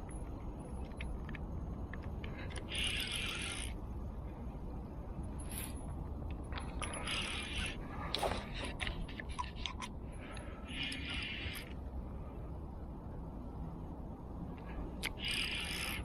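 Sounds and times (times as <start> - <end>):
fishing reel gears whirring: 2.6 - 3.8, 6.9 - 7.8, 10.6 - 11.8, 15.0 - 16.0.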